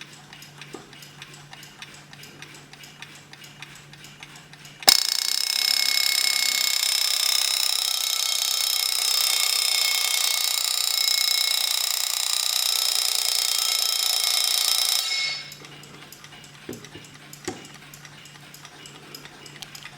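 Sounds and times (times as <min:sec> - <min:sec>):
clock ticking: 0:00.0 - 0:19.9
alarm clock bell ringing: 0:04.9 - 0:15.6.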